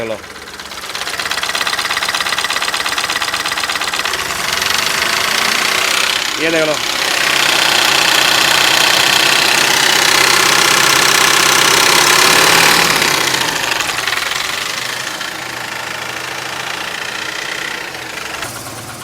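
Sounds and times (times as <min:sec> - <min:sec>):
diesel engine idling: 0:00.0 - 0:19.0
high tones over engine: 0:00.0 - 0:19.0.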